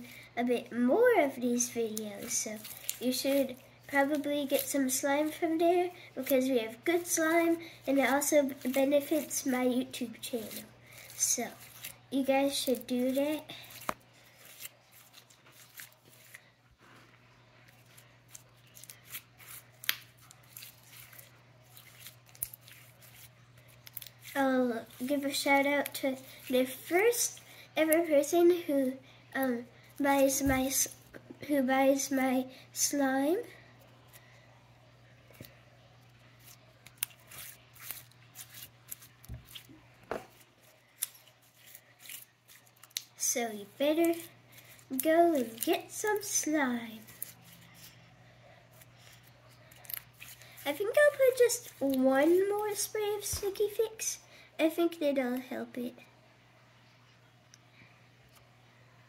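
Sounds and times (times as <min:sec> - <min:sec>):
faint low hum: 0:00.0 - 0:59.0
hands squishing slime: 0:01.9 - 0:05.6, 0:06.2 - 0:16.4, 0:17.7 - 0:26.9, 0:36.4 - 0:47.9, 0:49.8 - 0:52.3.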